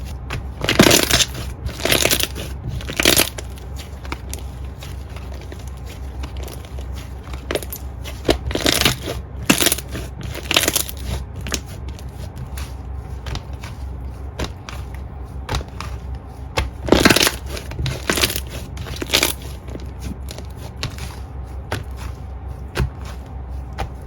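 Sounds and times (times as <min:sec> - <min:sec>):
steady low hum: 0:00.0 - 0:24.0
slime crackling and popping: 0:16.9 - 0:20.4.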